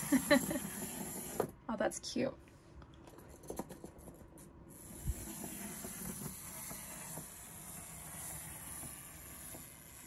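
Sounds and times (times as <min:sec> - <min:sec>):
wind-up toy clockwork whirring: 0:00.0 - 0:01.5, 0:04.7 - 0:10.0.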